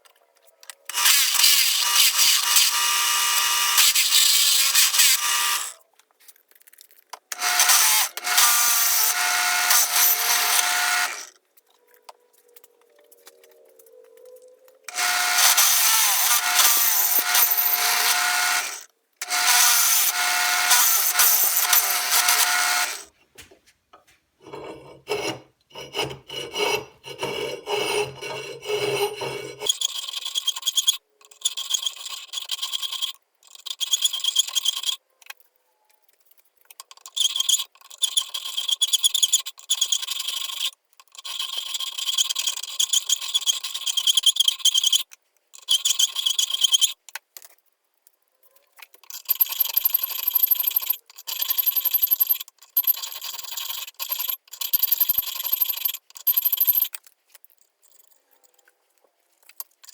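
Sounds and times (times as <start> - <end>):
power tool running: 0.9 - 5.7, 7.3 - 11.3, 14.9 - 23.1
hand tool rasping on steel: 7.4 - 11.3, 14.9 - 23.1, 24.4 - 29.8.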